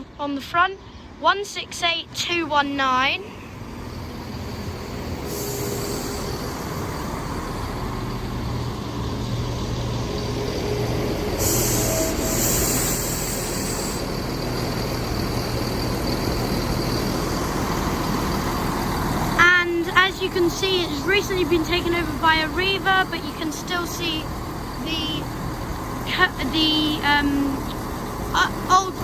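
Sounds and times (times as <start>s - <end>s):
diesel train engines humming: 0.0s - 29.0s
loud air hiss: 5.2s - 7.9s, 11.2s - 14.3s.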